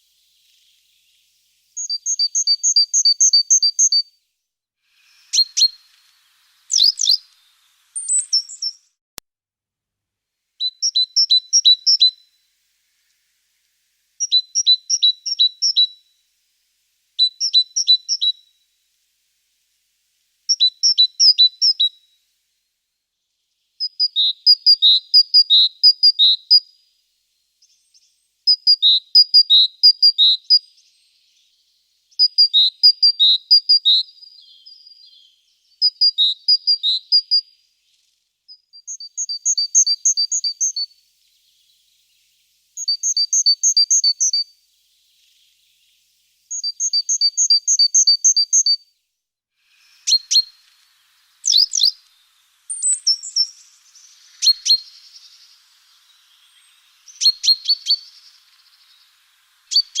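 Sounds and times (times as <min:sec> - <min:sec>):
songbird singing two-note figures: 0:05.0 - 0:08.9, 0:49.7 - 1:00.0.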